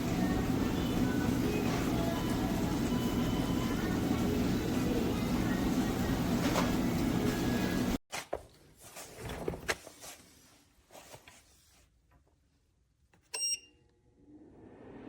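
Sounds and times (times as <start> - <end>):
space heater fan blowing: 0.0 - 8.0.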